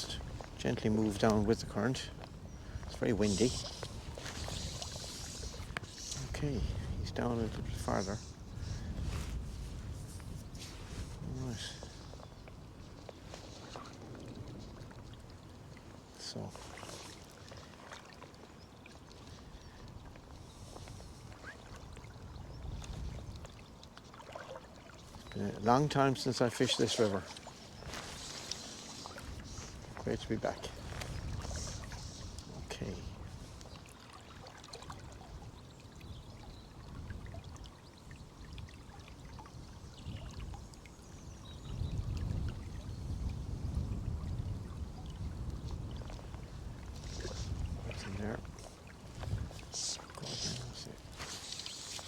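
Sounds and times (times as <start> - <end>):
wind rumbling on microphone: 0.0 - 17.0, 19.4 - 23.8, 26.9 - 33.9, 34.8 - 52.0
faint bird chirps: 20.4 - 22.7
river water running and splashing: 23.6 - 52.0.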